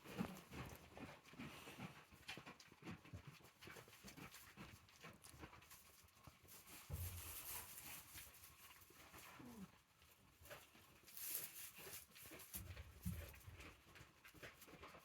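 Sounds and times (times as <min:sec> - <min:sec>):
goat rustling and knocking: 0:06.5 - 0:09.0, 0:10.5 - 0:13.8.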